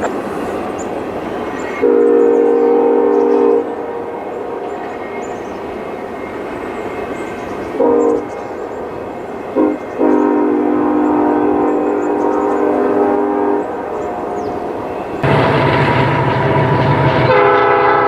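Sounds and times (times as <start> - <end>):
locomotive horn chord: 1.8 - 4.1, 7.8 - 8.2, 9.6 - 13.9, 15.2 - 18.0.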